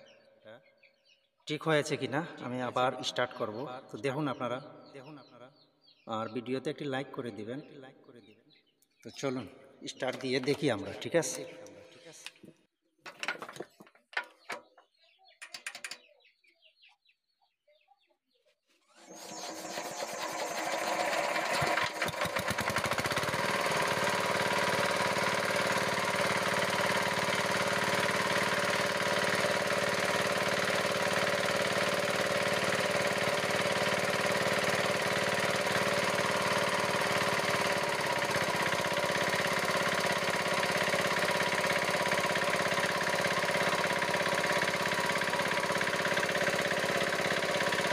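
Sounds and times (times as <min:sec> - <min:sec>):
diesel engine starting and running: 0:18.9 - 0:47.9.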